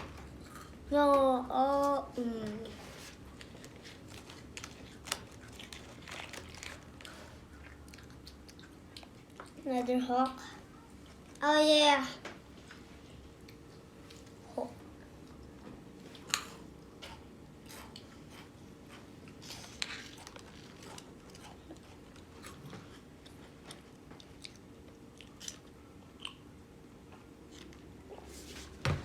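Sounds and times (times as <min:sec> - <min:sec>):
child chewing crunchy biscuits: 0:00.1 - 0:00.9, 0:01.8 - 0:11.4, 0:12.5 - 0:28.7.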